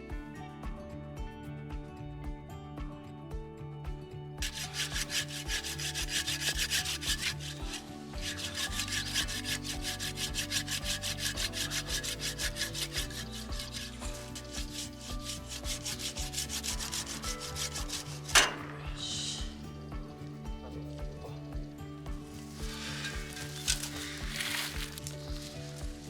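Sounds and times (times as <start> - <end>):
background music: 0.0 - 26.0
rapid rubbing strokes: 4.4 - 19.9, 22.3 - 26.0.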